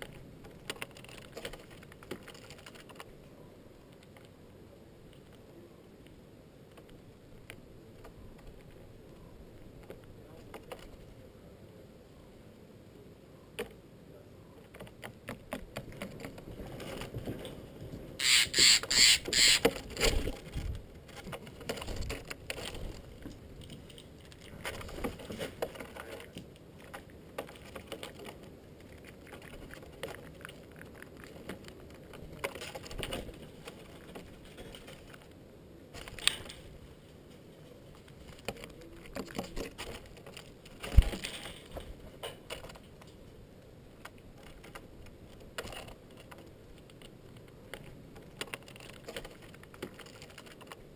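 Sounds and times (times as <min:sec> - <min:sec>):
jays harsh calls: 0:18.2 - 0:19.7.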